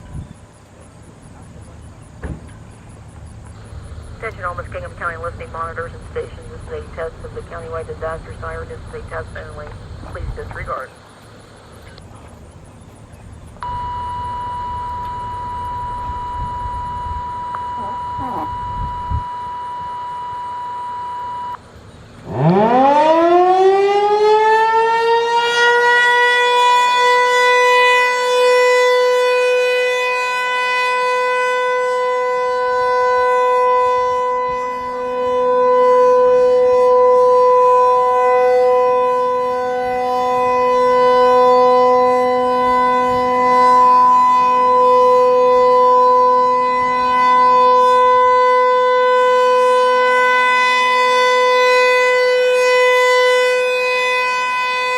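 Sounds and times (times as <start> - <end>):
siren steady tone: 3.5 - 11.0, 13.6 - 54.9
siren winding up whine: 13.6 - 21.6, 22.2 - 54.9.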